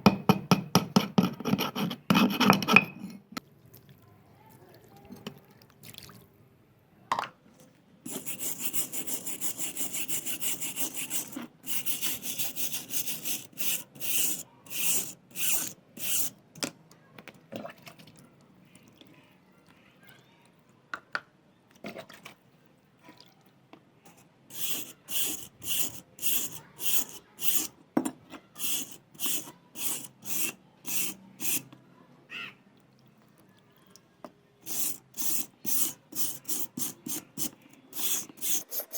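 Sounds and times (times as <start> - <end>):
scraping strokes on steel file: 1.0 - 2.9, 8.1 - 16.4, 24.1 - 27.7, 28.6 - 31.7, 34.6 - 38.9.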